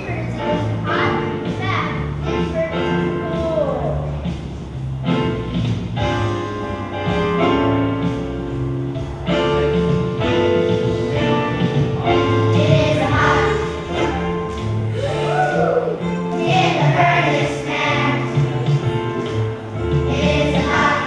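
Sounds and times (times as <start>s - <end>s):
instrumental accompaniment: 0.0s - 21.0s
children's choir singing: 12.0s - 21.0s.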